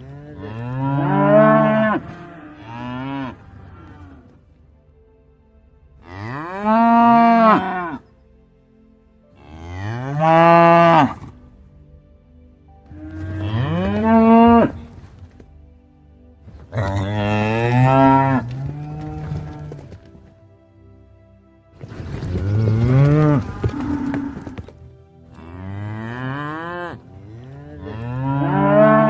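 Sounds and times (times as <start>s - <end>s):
cattle mooing: 0.0s - 4.4s, 6.0s - 8.0s, 9.4s - 11.3s, 12.9s - 15.0s, 16.7s - 20.0s, 22.2s - 29.0s.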